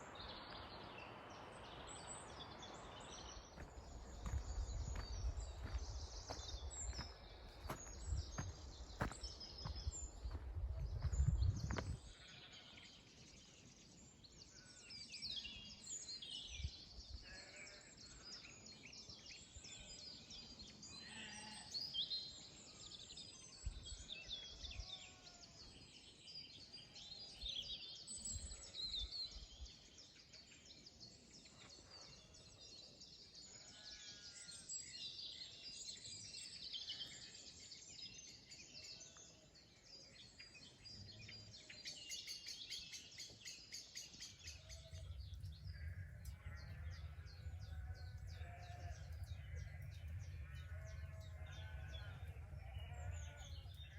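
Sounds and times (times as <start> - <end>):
songbirds singing: 0.0 - 53.9
soft low thuds: 3.6 - 12.0
sheep bleating: 17.2 - 17.9, 21.0 - 21.7, 45.8 - 49.7, 50.4 - 53.8.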